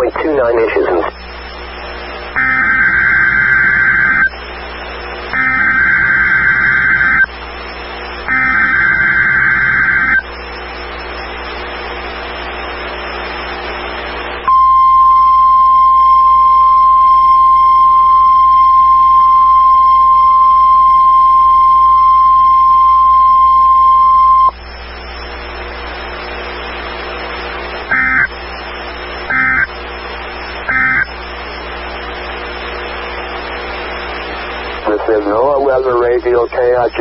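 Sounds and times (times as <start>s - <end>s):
digital data tone bursts: 2.4s - 4.3s, 5.3s - 7.3s, 8.3s - 10.2s, 27.9s - 28.3s, 29.3s - 29.7s, 30.7s - 31.1s
steady warning alarm tone: 2.4s - 4.3s, 5.3s - 7.3s, 8.3s - 10.2s, 27.9s - 28.3s, 29.3s - 29.7s, 30.7s - 31.1s.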